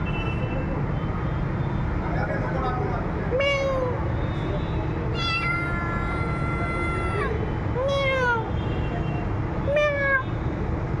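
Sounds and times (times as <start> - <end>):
cat meowing: 3.3 - 4.0, 5.1 - 8.5, 9.7 - 10.3.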